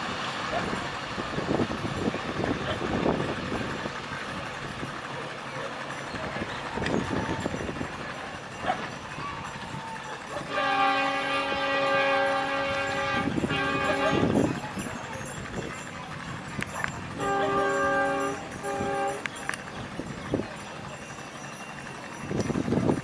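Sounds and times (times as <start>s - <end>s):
locomotive air horn blast: 10.4s - 14.5s, 17.2s - 19.3s.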